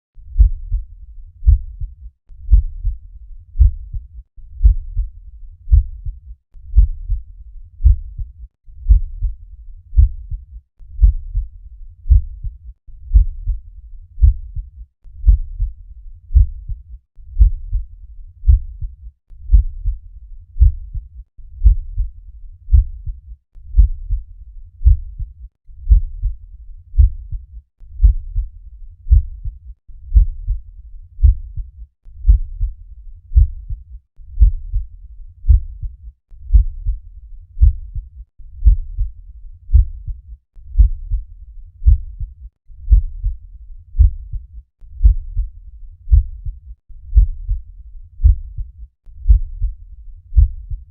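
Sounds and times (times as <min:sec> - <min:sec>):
heartbeat lub-dub: 0:00.3 - 0:03.0, 0:03.6 - 0:05.1, 0:05.7 - 0:20.0, 0:20.6 - 0:24.2, 0:24.8 - 0:26.4, 0:27.0 - 0:39.1, 0:39.7 - 0:50.9.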